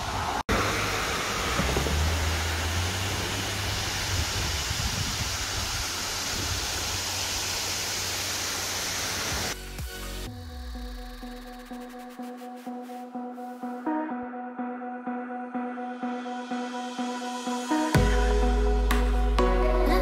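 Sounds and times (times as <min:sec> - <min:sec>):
waterfall rushing: 0:00.0 - 0:09.6
music: 0:09.6 - 0:20.0.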